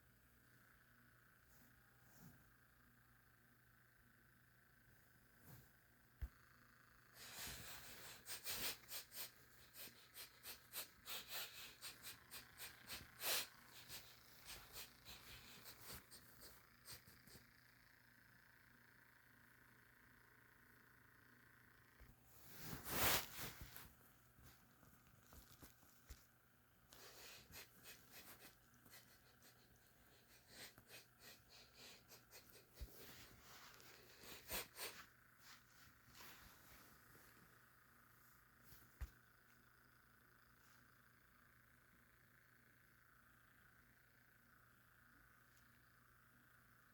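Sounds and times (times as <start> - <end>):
lion sniffing: 7.2 - 17.5.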